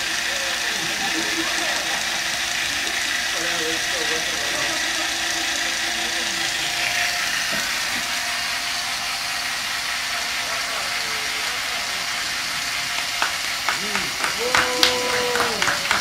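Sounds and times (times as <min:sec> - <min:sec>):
chainsaw engine idling: 0:00.0 - 0:16.0
sharp claps: 0:12.8 - 0:16.0.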